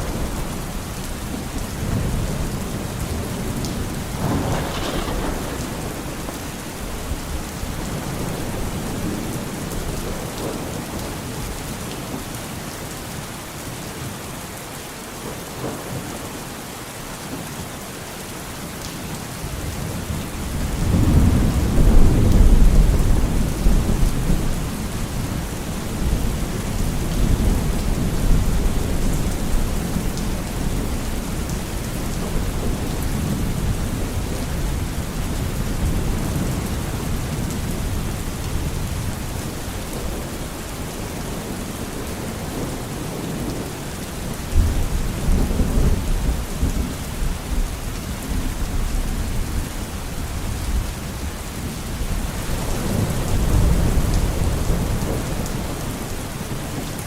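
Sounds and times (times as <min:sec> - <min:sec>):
rolling thunder: 0:00.0 - 0:10.8, 0:20.0 - 0:40.4
heavy rain falling: 0:00.0 - 0:57.0.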